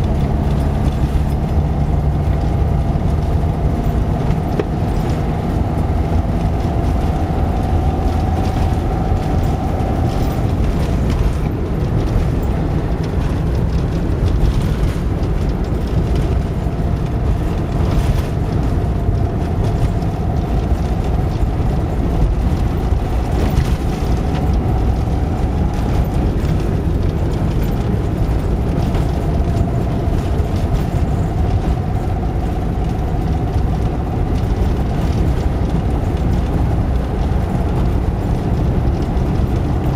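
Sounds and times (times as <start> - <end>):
high engine whine: 0.0 - 39.9
road noise: 0.0 - 39.9
van engine droning: 0.0 - 39.9.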